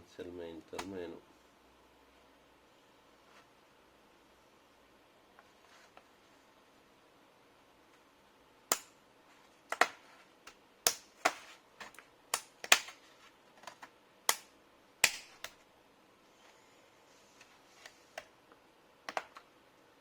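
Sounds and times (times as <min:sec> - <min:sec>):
plastic clips snapping: 0:08.7 - 0:08.9, 0:09.7 - 0:13.0.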